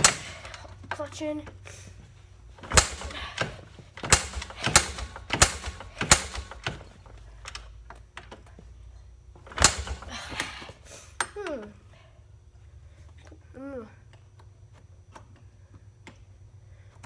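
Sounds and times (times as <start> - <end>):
kick-start lever ratcheting clacks: 0.0 - 1.0, 2.6 - 8.3, 9.5 - 10.1.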